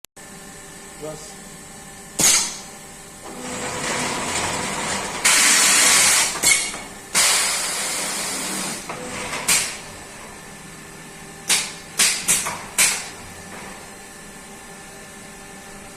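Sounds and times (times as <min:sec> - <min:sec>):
sharp air blasts: 0:05.2 - 0:08.8.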